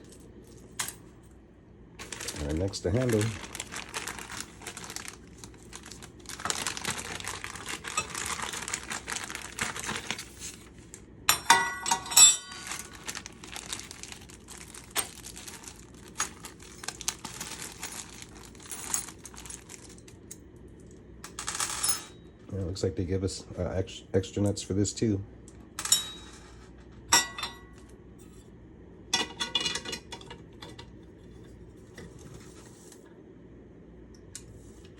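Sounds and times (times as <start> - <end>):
plastic packaging crinkling: 2.0 - 11.0, 12.5 - 20.3.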